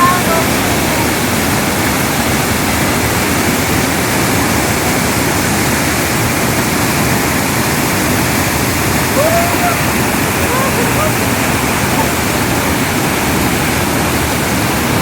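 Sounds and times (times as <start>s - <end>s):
waterfall crashing: 0.0s - 15.0s.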